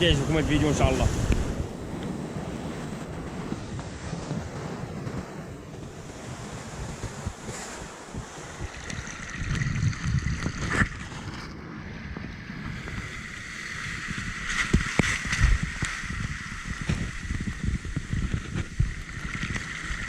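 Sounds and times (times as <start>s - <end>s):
seawater sloshing and gurgling: 5.1s - 20.0s.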